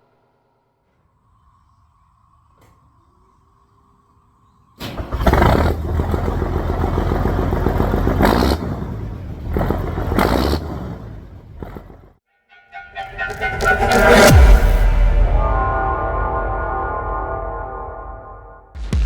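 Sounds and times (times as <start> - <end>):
diesel truck engine running: 4.8 - 12.2.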